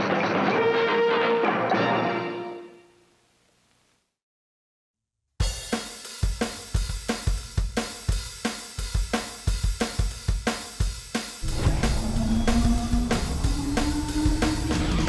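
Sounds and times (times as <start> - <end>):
drum kit beat: 5.4 - 15.0
held bass note: 11.4 - 15.0.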